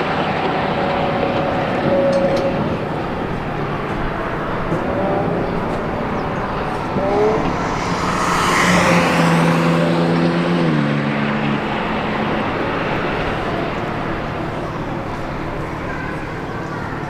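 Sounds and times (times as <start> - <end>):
sports car driving past: 0.8 - 15.4.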